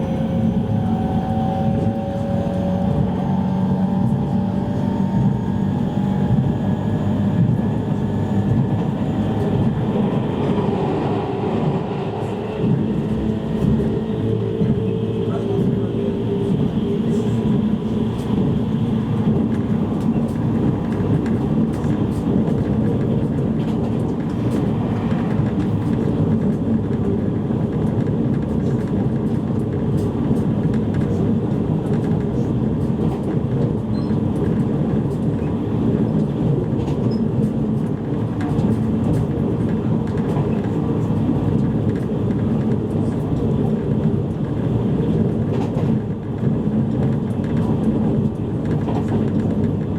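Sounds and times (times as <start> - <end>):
constant hum: 0.0 - 27.4
train wheels rumbling on rails: 0.0 - 49.9.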